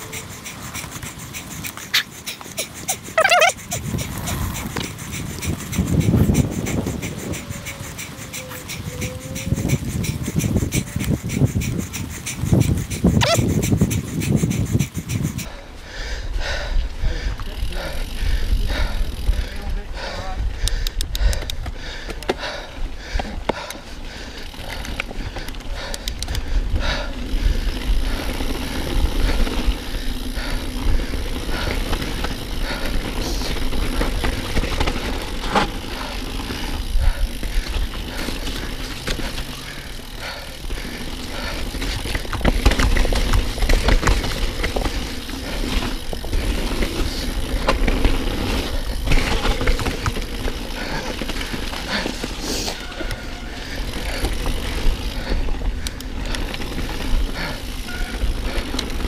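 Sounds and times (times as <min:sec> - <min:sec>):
bike knocking and rattling: 0:00.0 - 0:15.6, 0:16.4 - 0:59.0
wind rumble on microphone: 0:03.5 - 0:15.6, 0:16.2 - 0:23.7, 0:24.9 - 0:39.4.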